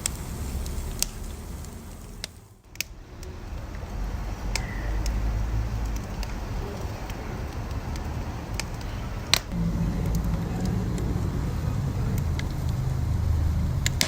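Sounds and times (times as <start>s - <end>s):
wood fire crackling: 0.0s - 14.0s
low rumble: 9.5s - 14.0s.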